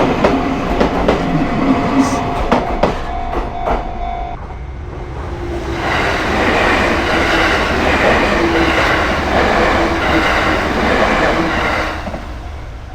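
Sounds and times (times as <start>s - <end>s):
train wheels on rails rushing: 0.0s - 12.9s.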